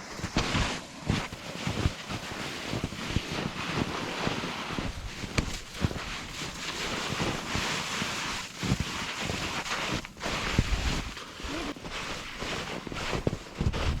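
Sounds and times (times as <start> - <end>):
snow scraping under feet: 0.0 - 14.0
wind buffeting microphone: 13.3 - 14.0.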